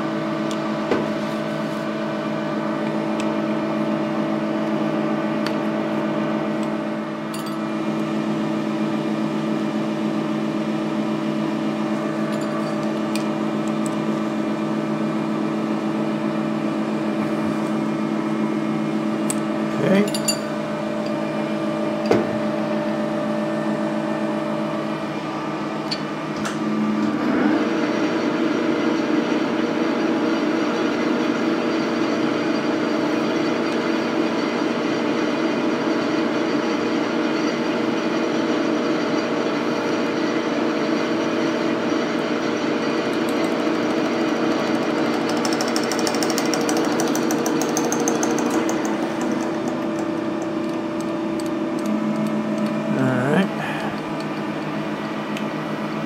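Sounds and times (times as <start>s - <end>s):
drill boring into metal: 43.2s - 51.8s.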